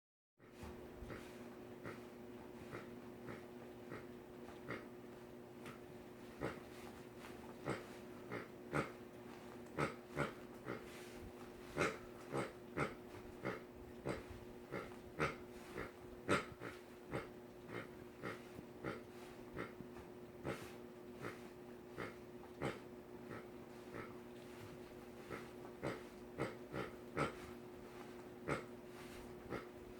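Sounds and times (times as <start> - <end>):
dog snorting and puffing: 0.4 - 29.9
steady low hum: 0.4 - 29.9.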